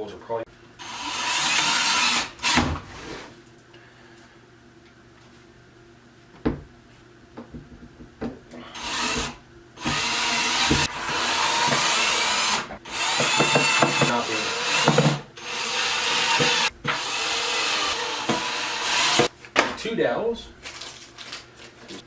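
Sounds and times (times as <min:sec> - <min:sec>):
power drill driving fasteners: 0:00.8 - 0:02.6, 0:08.8 - 0:19.3.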